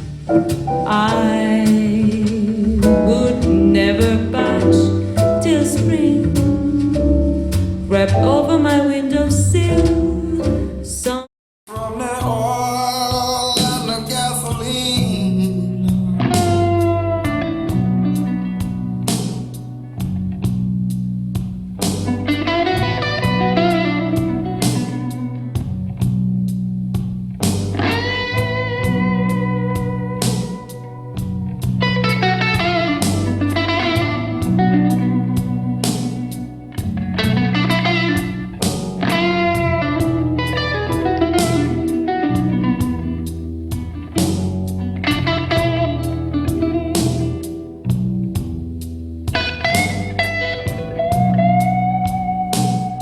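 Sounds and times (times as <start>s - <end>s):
light ticking beat: 0.0s - 8.9s
plucked guitar melody: 0.0s - 11.0s, 13.4s - 53.0s
steady bass notes: 0.0s - 11.2s, 13.4s - 53.0s
sharp percussive hits: 0.3s - 1.8s.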